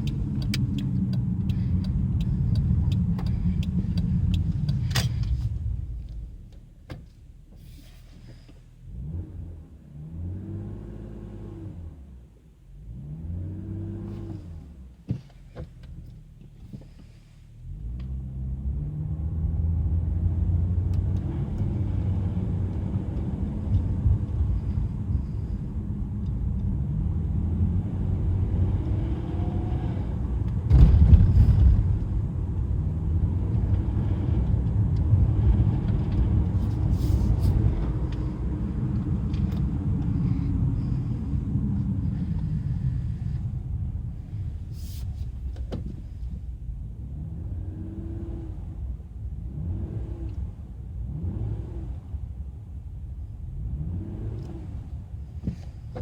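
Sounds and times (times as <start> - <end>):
car engine running: 0.0 - 8.3, 20.5 - 49.7.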